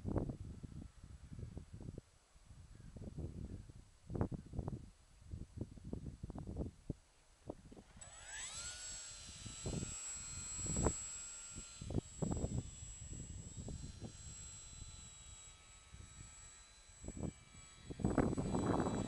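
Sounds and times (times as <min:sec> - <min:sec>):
strong wind buffeting microphone: 0:00.0 - 0:08.0, 0:09.3 - 0:11.0, 0:11.6 - 0:15.1, 0:17.0 - 0:19.0
electric motors whining: 0:07.8 - 0:19.0.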